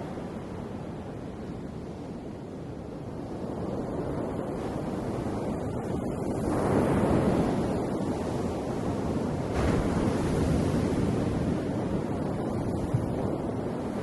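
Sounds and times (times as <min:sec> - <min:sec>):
ocean waves breaking: 0:04.0 - 0:14.0.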